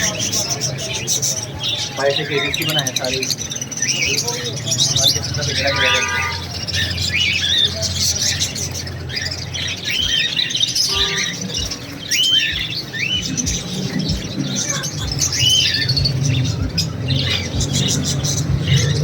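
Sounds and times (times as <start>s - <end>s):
parrots chirping and chattering: 0.0s - 19.0s
rising and falling bird call: 9.3s - 19.0s.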